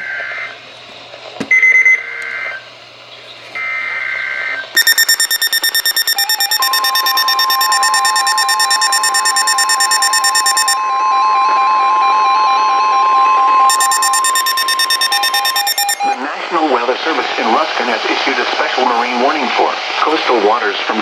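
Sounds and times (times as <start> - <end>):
warbling data squawk: 3.6 - 10.8, 13.7 - 16.2
fast-pulsing electronic alarm beep: 4.8 - 10.8, 13.7 - 16.2
steady alert tone: 4.8 - 10.8, 13.7 - 16.2.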